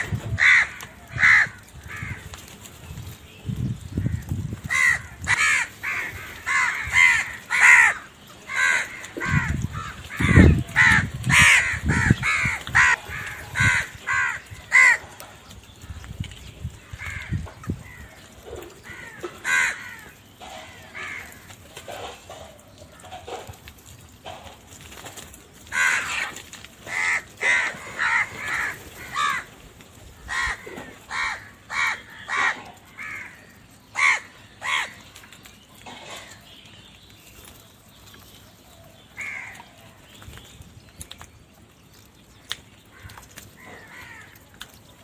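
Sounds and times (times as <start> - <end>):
crows cawing: 0.0 - 2.5, 4.0 - 16.0, 16.8 - 23.6, 25.6 - 35.1, 39.2 - 39.8, 42.9 - 44.6.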